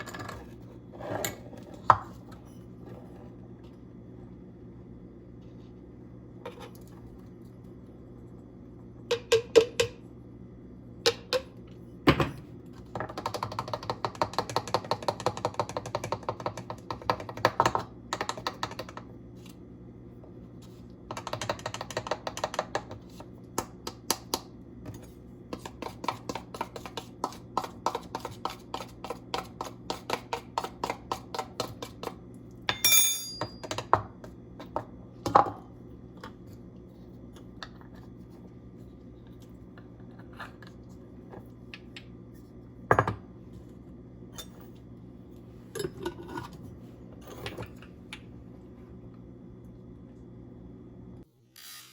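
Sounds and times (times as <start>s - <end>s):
ringing clink: 32.7s - 33.6s.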